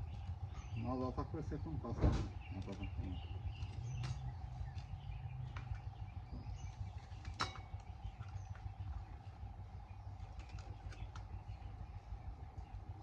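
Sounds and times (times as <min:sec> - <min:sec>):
low rumble: 0:00.0 - 0:13.0.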